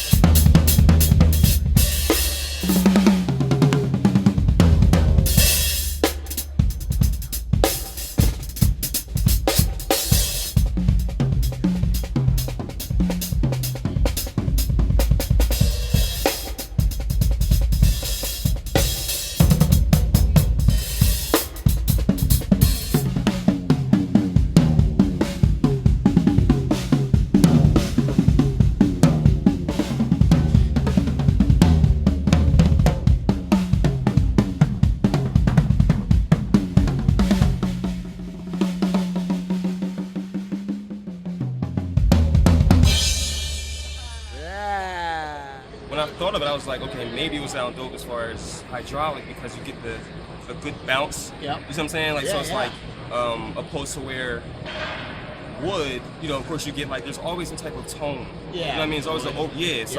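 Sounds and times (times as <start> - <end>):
crashing cymbals and hi-hat: 0.0 - 3.3, 5.2 - 23.6, 42.2 - 44.4
drum kit solo: 0.0 - 45.5.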